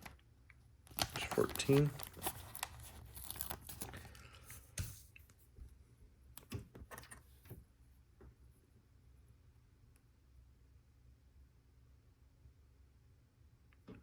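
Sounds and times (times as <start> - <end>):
sticker peeled off backing sheet: 1.0 - 4.1.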